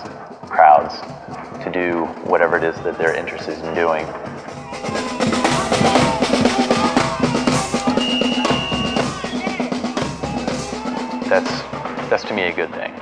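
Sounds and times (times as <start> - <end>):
marching drum band: 0.0 - 13.0
steady held tone: 2.5 - 12.8
short high held tone: 4.5 - 12.1.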